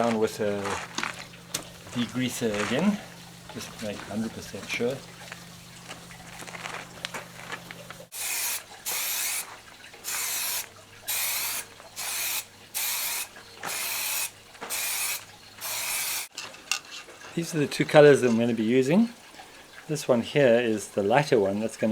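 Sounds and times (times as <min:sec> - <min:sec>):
spray can hissing bursts: 0:08.1 - 0:16.3.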